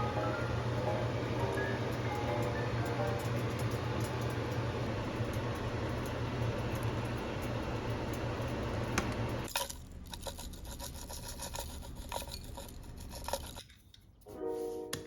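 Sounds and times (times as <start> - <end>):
low hum: 0.0 - 9.5
utensils scraping and clicking: 9.0 - 14.3.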